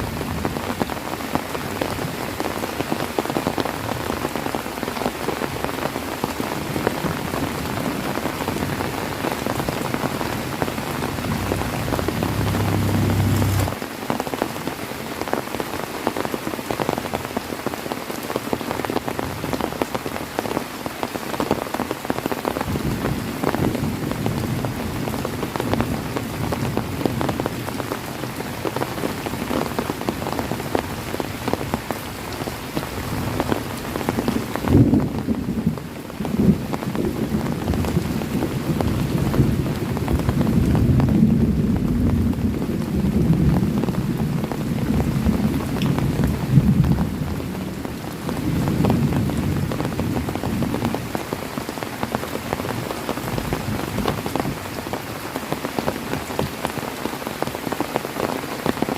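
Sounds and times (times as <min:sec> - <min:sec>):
heavy rain pattering: 0:00.0 - 0:58.9
low rumble: 0:10.4 - 0:13.8.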